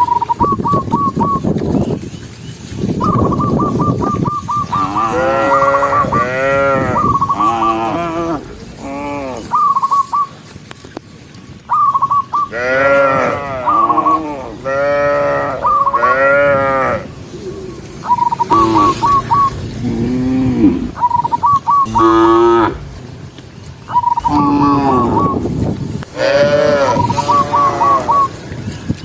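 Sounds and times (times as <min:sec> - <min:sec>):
cattle mooing: 0:04.7 - 0:09.6, 0:12.5 - 0:21.0, 0:21.8 - 0:23.0, 0:24.1 - 0:25.4, 0:26.1 - 0:28.4.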